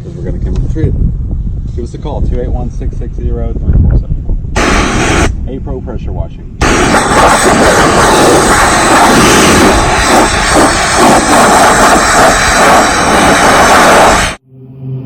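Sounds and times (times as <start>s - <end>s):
pressure washer spraying: 4.6s - 5.3s, 6.6s - 14.4s.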